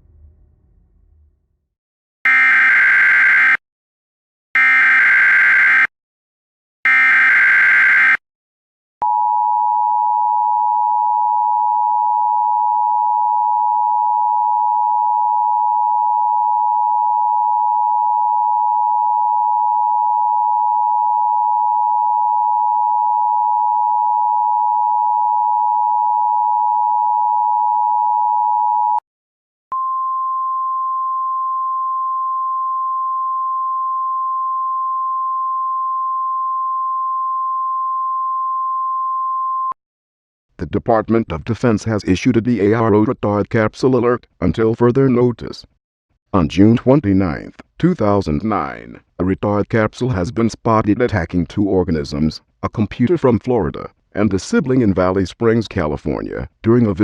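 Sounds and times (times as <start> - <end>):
single steady tone: 29.7 - 39.8.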